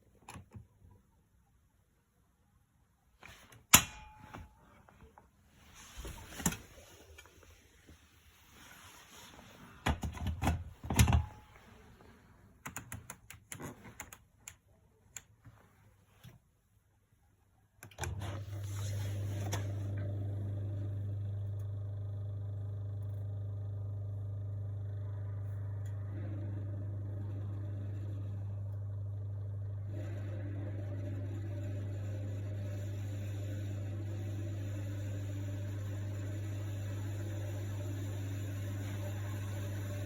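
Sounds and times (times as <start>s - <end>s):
low mechanical hum: 17.8s - 40.0s.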